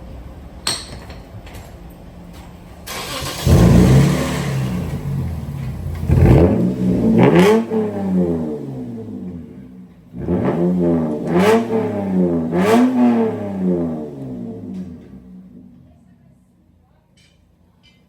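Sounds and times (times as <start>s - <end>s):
car engine cranking: 2.8s - 16.0s
car engine revving: 2.9s - 16.3s.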